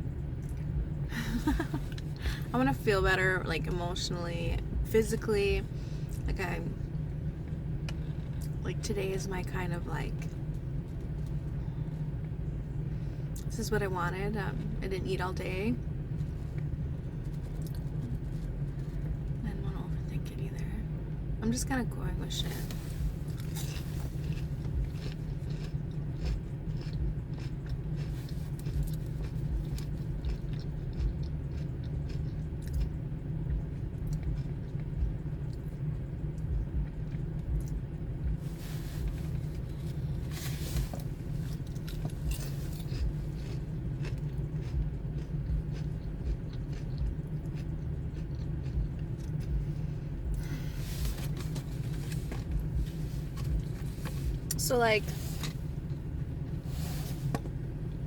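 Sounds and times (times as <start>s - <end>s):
steady low rumble: 0.0s - 58.0s
person chewing crunchy food: 16.1s - 19.4s, 22.6s - 58.0s.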